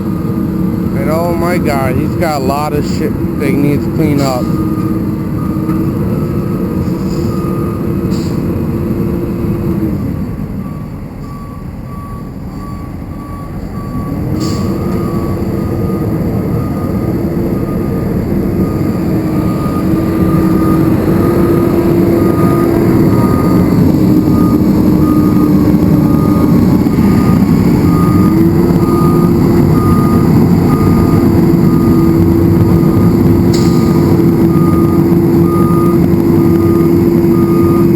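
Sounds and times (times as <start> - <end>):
backup alarm beeping: 0.0 - 8.6, 10.6 - 37.9
truck engine revving: 0.0 - 10.7, 11.3 - 37.9.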